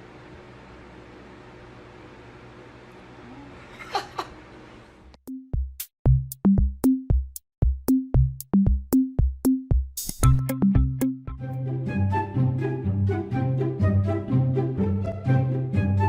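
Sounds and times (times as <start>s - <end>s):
electronic music with drum machine: 5.2s - 11.5s.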